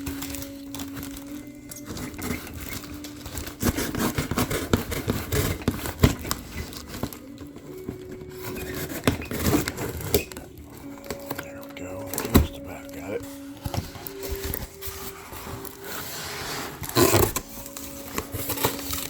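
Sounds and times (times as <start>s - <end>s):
cardboard box scraping and tearing: 1.8s - 7.2s, 7.8s - 11.3s, 13.6s - 19.0s.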